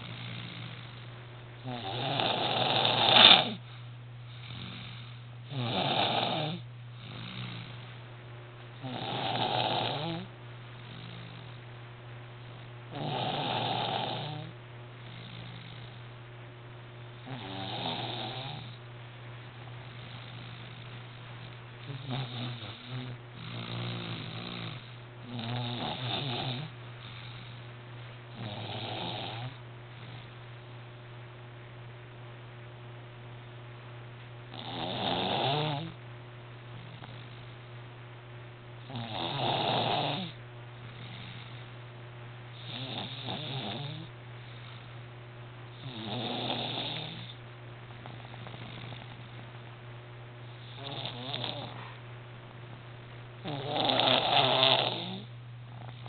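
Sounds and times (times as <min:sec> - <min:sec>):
baby snoring: 0:00.0 - 0:03.6, 0:04.5 - 0:07.8, 0:08.8 - 0:10.3, 0:12.9 - 0:16.0, 0:17.2 - 0:18.8, 0:21.8 - 0:27.6, 0:28.4 - 0:29.6, 0:34.6 - 0:36.0, 0:38.9 - 0:41.6, 0:42.6 - 0:44.1, 0:45.8 - 0:47.4, 0:50.6 - 0:52.0, 0:53.4 - 0:56.0.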